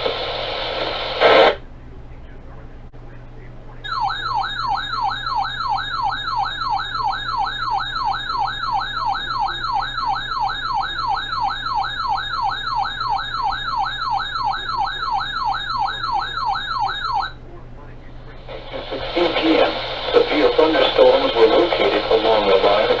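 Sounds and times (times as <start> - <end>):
yelping siren alert tone: 3.9 - 17.4.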